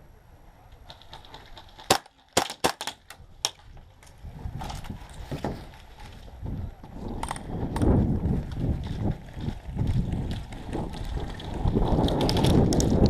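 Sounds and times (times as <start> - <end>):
airsoft gun shots: 1.8 - 3.6
low rumbling microphone noise: 3.2 - 13.0.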